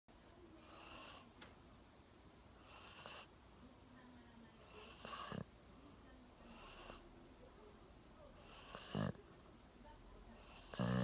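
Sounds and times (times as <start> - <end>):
dog snoring softly: 0.6 - 1.3, 2.6 - 3.3, 4.6 - 5.5, 6.4 - 7.1, 8.4 - 9.2, 10.4 - 11.0
dog snorting: 2.6 - 3.3, 4.6 - 5.5, 6.4 - 7.1, 8.4 - 9.2, 10.4 - 11.0.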